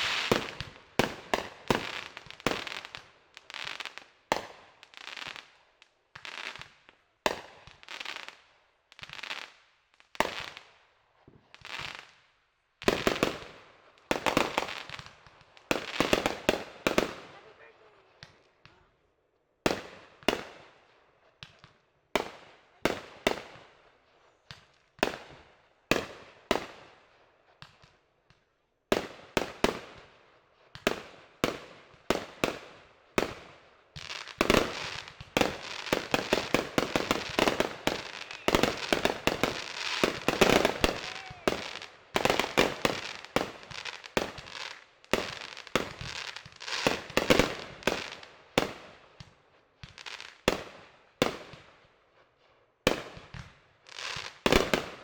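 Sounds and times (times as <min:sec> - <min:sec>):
fireworks bangs: 0:00.0 - 0:03.0, 0:34.0 - 0:48.8
fireworks crackling: 0:00.0 - 0:08.4, 0:12.8 - 0:17.8, 0:30.8 - 0:50.8, 0:53.0 - 0:55.0.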